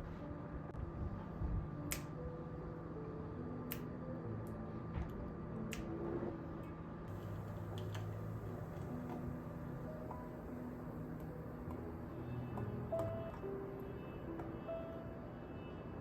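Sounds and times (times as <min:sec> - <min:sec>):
steady low hum: 0:00.0 - 0:13.6.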